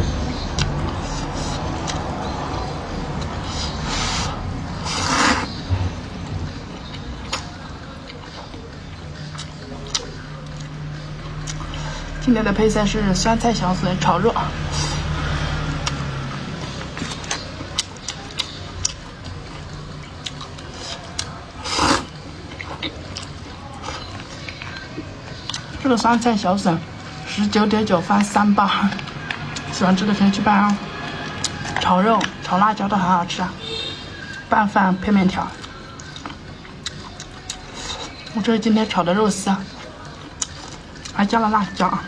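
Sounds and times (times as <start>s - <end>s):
person slurping noodles: 3.4s - 5.5s, 21.6s - 22.1s
rustling scrape: 3.5s - 5.5s.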